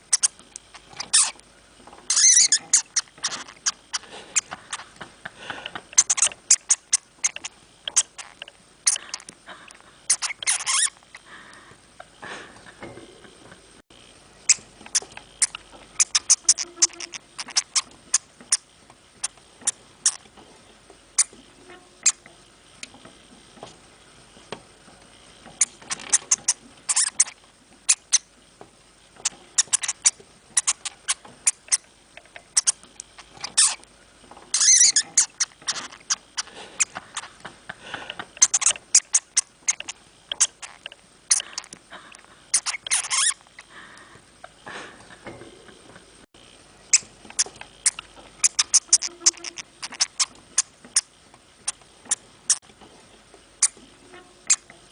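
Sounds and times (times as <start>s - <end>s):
hamster clicking and scratching: 2.1s - 3.8s, 14.5s - 18.6s, 46.9s - 52.7s.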